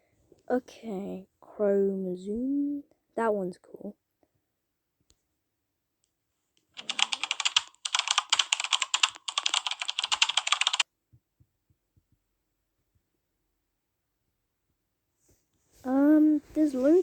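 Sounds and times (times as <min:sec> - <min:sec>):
rapid dense clicking: 0:06.8 - 0:10.8.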